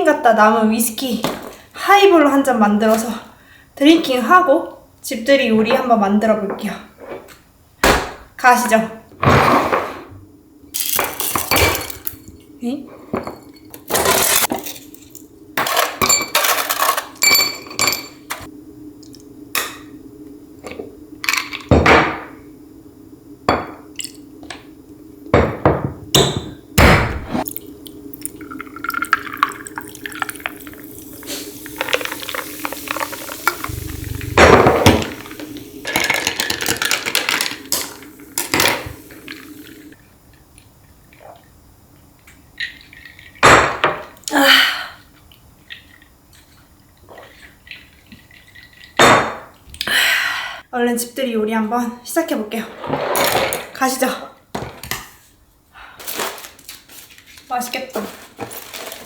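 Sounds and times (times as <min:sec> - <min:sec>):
glassware and bottles clinking: 0:15.6 - 0:18.5
liquid pouring: 0:27.5 - 0:40.0.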